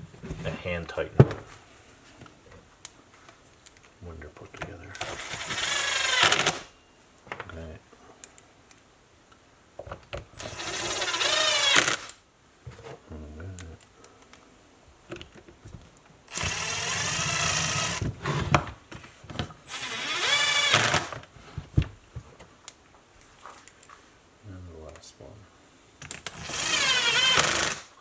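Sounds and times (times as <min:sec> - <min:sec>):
cordless drill driving screws: 0:05.0 - 0:06.7, 0:10.4 - 0:12.2, 0:16.3 - 0:18.5, 0:19.6 - 0:21.2, 0:26.1 - 0:28.0.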